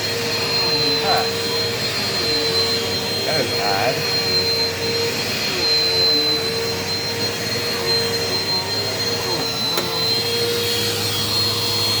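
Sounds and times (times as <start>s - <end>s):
vacuum cleaner running: 0.0s - 12.0s.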